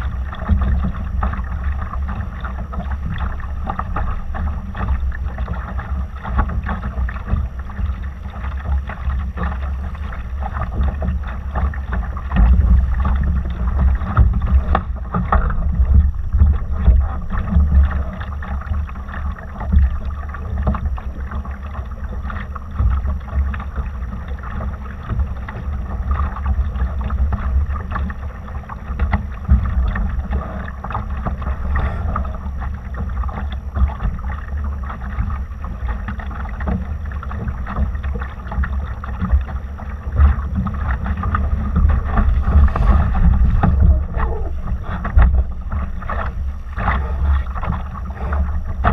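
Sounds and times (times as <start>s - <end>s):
water splashing along hull: 0.0s - 48.9s
wind buffeting microphone: 39.1s - 48.9s.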